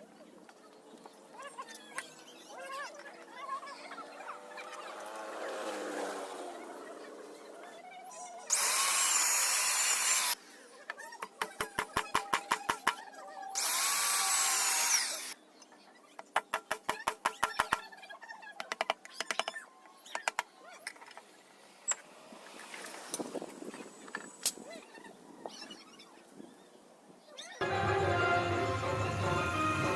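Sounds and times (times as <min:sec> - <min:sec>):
power drill running: 0:08.5 - 0:10.4, 0:13.6 - 0:15.4.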